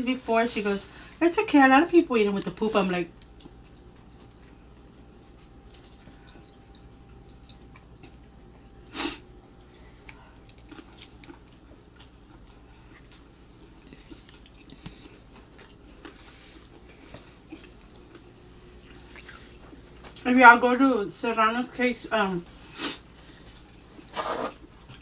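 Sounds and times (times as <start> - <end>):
person chewing and biting: 10.0 - 20.1.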